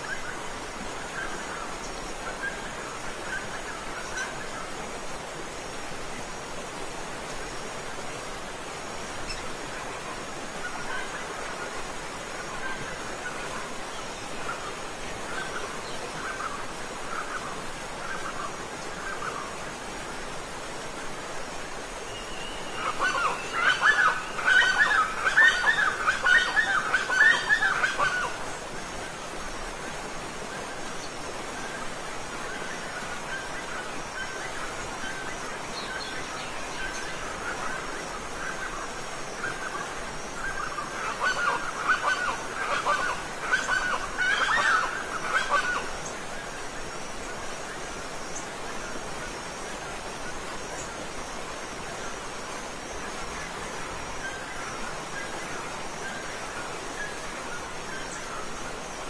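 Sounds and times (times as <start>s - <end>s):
waterfall rushing: 0.0s - 59.0s
bird honking calls: 22.1s - 28.4s.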